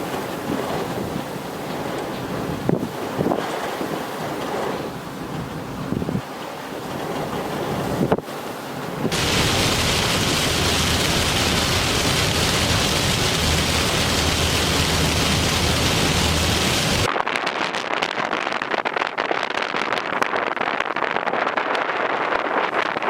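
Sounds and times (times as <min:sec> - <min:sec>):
heavy rain: 0:00.0 - 0:19.1
storm wind on microphone: 0:00.0 - 0:23.0
deep rumble: 0:09.1 - 0:17.1.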